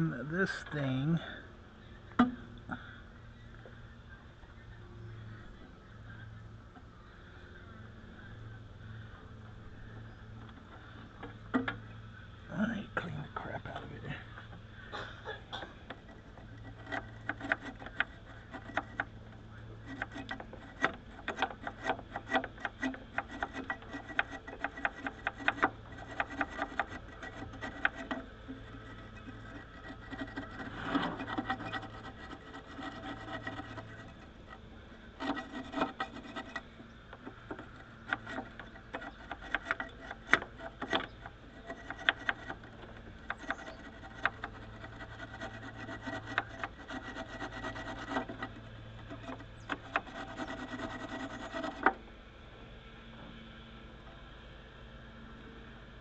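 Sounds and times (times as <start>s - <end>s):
steady low hum: 0.0s - 56.0s
hand scraping and rubbing metal: 15.8s - 52.0s.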